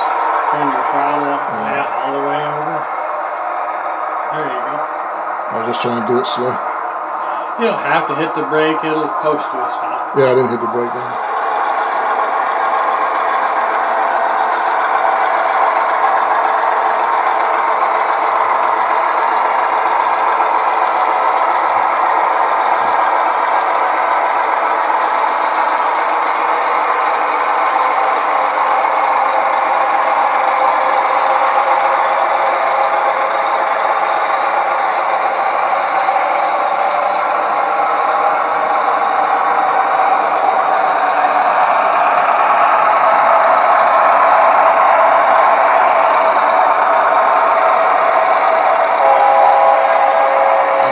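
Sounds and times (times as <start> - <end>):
diesel engine sound through speaker: 0.0 - 3.1, 4.2 - 12.4, 42.8 - 50.9.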